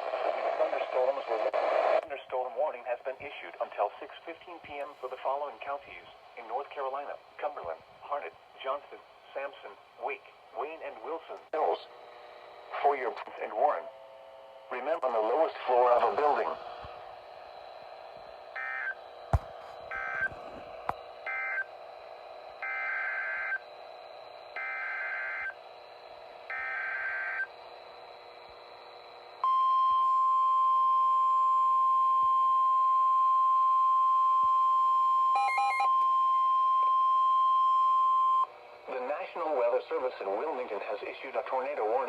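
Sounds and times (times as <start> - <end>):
faint hum: 0.0 - 35.3
steady alarm tone: 18.6 - 21.7.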